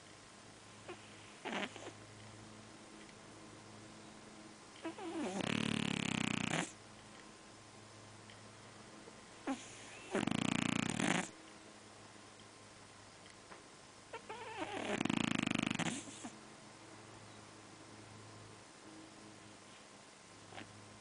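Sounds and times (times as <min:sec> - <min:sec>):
cat snoring: 0:00.9 - 0:02.0, 0:04.8 - 0:06.8, 0:09.4 - 0:11.3, 0:14.1 - 0:16.3.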